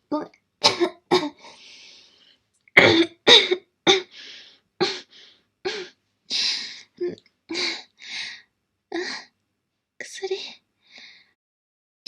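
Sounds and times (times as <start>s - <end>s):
girl coughing: 0.6s - 1.5s, 2.8s - 4.1s, 5.7s - 6.0s
raspy breaths: 1.4s - 2.4s, 4.1s - 5.5s.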